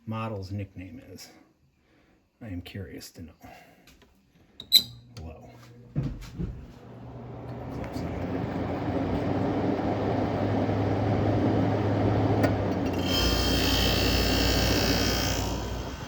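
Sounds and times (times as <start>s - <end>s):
compressor hum and whine: 4.6s - 16.0s
air conditioner fan motor: 4.9s - 16.0s.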